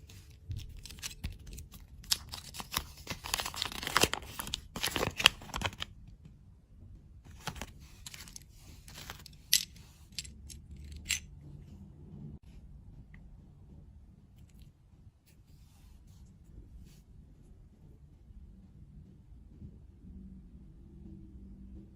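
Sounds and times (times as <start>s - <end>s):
plastic wrapper crinkling: 0.6s - 5.9s.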